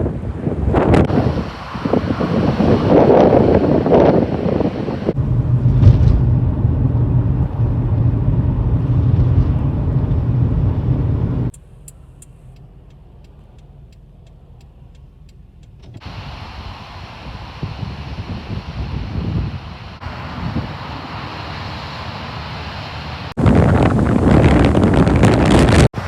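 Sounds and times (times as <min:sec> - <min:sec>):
wind buffeting microphone: 0:00.0 - 0:11.6, 0:12.7 - 0:21.4, 0:23.3 - 0:26.0
faint regular ticks: 0:11.5 - 0:15.9.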